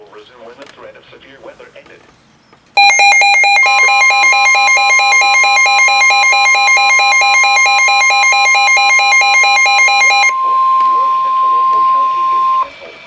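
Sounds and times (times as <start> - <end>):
fast pulsing electronic beeps: 2.8 - 12.7
steady warning alarm tone: 2.8 - 12.7.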